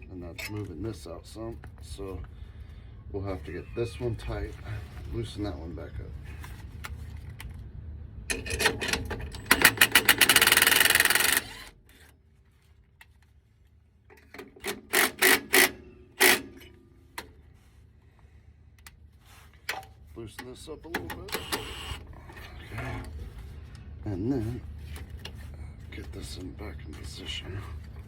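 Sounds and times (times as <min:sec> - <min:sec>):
impact wrench hammering: 0:14.6 - 0:16.8.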